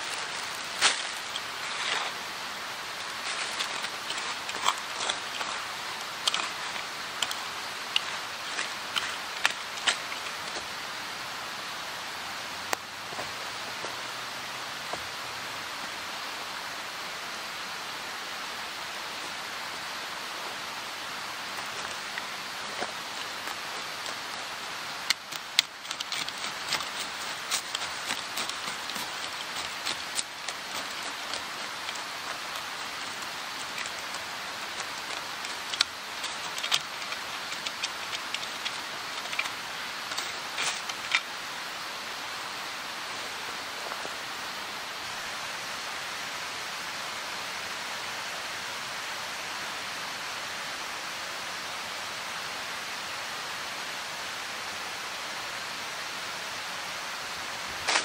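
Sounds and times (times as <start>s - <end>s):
steady outdoor hiss: 0.0s - 58.0s
sharp ticks and clicks: 21.6s - 41.3s.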